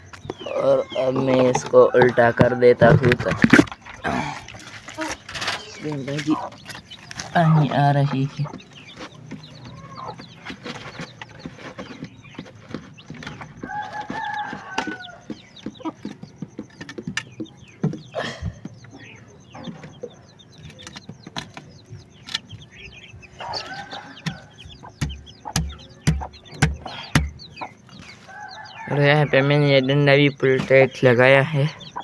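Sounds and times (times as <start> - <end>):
adult bird call: 0.0 - 32.0
chickens clucking: 0.0 - 32.0
chicks peeping: 0.0 - 32.0
sharp knocks and taps: 8.1 - 18.9, 24.1 - 27.8
low thumps: 24.2 - 27.8.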